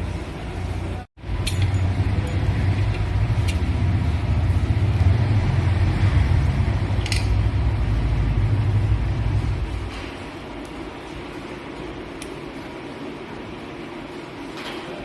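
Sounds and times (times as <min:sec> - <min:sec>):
motorcycle engine running: 0:01.3 - 0:10.0.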